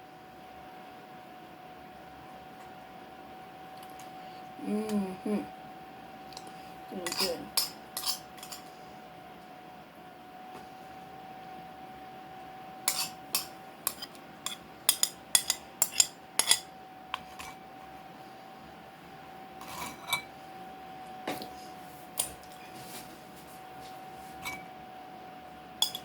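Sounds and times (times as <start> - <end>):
spoon clinking against bowl: 7.0 - 8.6, 12.9 - 17.3, 25.8 - 26.0.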